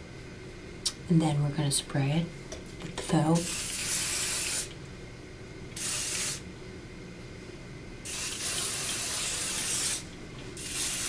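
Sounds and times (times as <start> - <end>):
hair spray hissing: 3.4 - 4.7, 5.8 - 6.4, 8.1 - 11.0.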